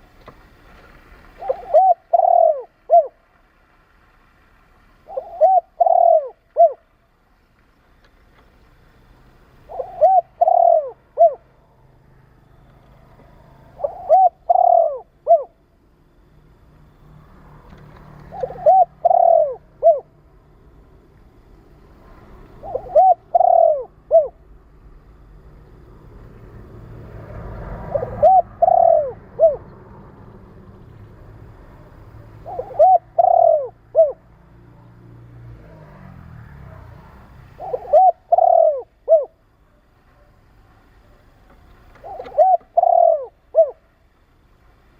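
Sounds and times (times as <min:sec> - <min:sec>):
dove cooing: 0:01.0 - 0:03.2, 0:05.0 - 0:07.0, 0:09.5 - 0:12.1, 0:12.9 - 0:15.7, 0:17.4 - 0:20.3, 0:22.0 - 0:25.0, 0:26.8 - 0:30.6, 0:31.8 - 0:40.4, 0:41.0 - 0:44.2.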